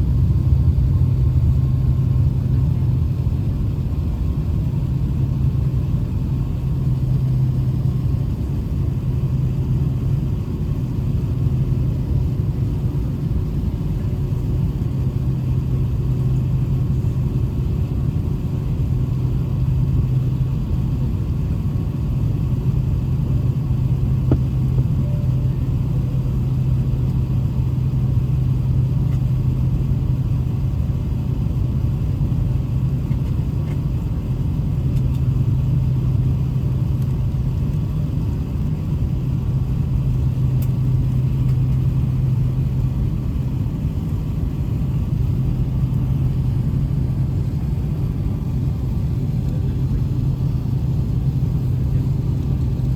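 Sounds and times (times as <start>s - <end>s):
low drone: 0.0s - 4.0s
aircraft cabin rumble: 0.0s - 52.9s.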